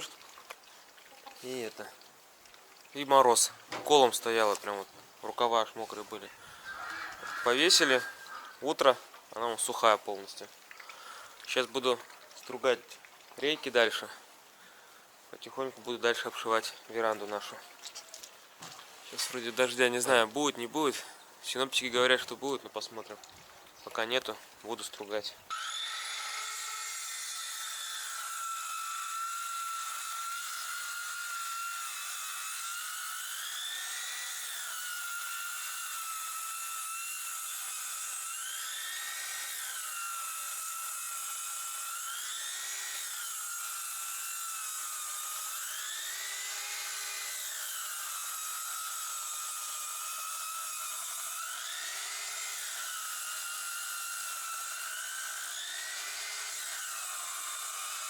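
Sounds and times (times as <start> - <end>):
electric planer planing wood: 25.5 - 58.0.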